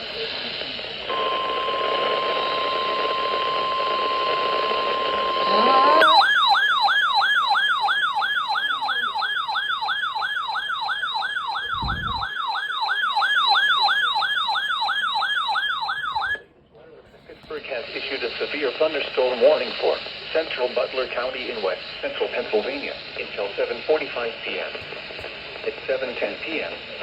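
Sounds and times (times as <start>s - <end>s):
radio hiss: 0.0s - 6.1s, 16.8s - 27.0s
steady alarm tone: 1.0s - 16.4s
electronic yelp siren: 1.1s - 16.5s.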